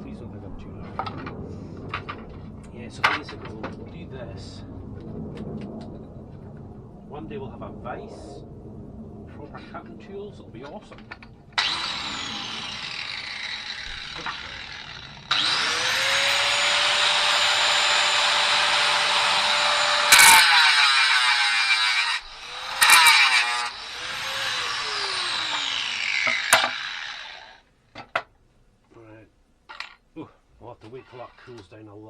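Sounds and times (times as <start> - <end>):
angle grinder cutting metal: 11.6 - 27.6
angle grinder whine: 11.6 - 27.6.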